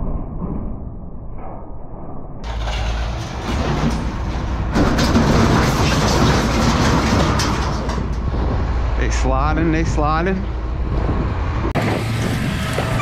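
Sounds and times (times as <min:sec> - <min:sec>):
metal clattering and knocks: 0:02.4 - 0:08.9
heavy engine rumbling: 0:02.4 - 0:13.0.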